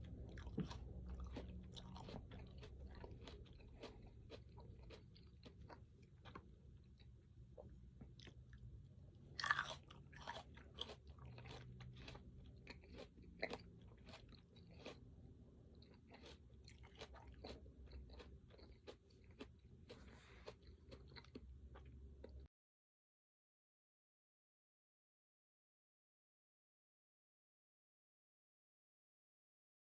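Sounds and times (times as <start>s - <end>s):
person chewing crunchy food: 0.0s - 22.5s.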